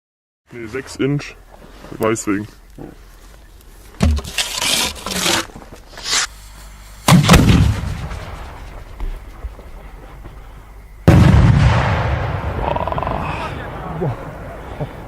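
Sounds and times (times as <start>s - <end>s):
firework shell bursting boom: 7.1s - 8.7s, 11.1s - 12.8s
firework launch thump: 7.1s - 8.8s.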